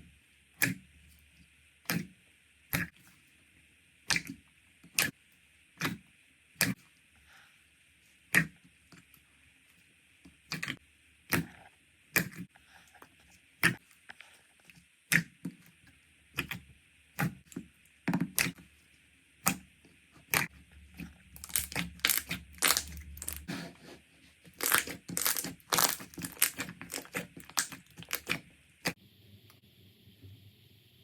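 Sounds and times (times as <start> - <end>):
slime popping and crackling: 21.4 - 23.5, 24.5 - 29.0.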